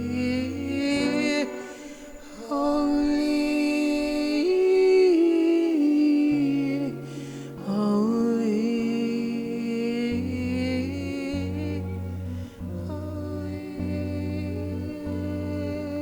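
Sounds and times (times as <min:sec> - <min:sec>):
low sustained chord: 0:00.0 - 0:16.0
person singing wordless notes: 0:00.0 - 0:16.0.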